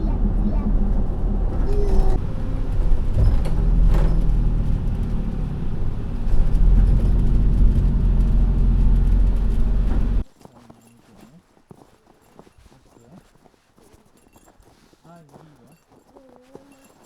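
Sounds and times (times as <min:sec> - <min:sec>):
vehicle engine rumbling: 0:00.0 - 0:10.2.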